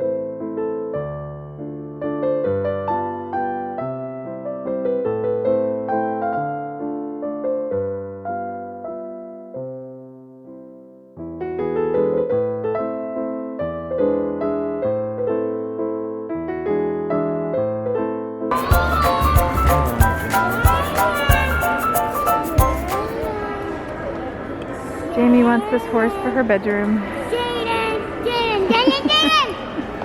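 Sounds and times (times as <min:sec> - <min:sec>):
soft piano music: 0:00.0 - 0:23.4.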